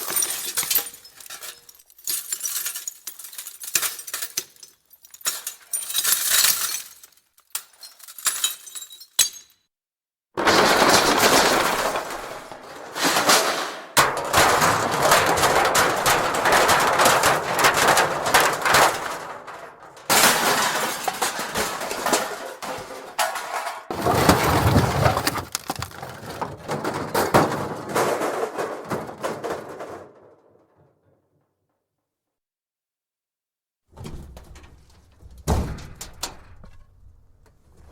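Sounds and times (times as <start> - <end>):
metal debris rattling and clanking: 0.0 - 9.5, 10.4 - 30.9.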